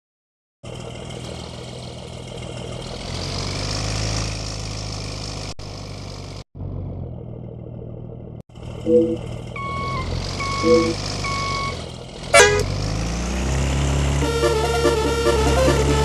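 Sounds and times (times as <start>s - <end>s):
motorcycle engine idling and revving: 0.6s - 16.0s.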